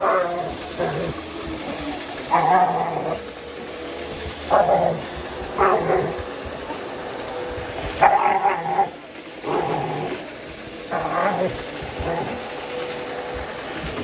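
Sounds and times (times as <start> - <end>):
dog barking: 4.5 - 6.2, 8.0 - 8.9.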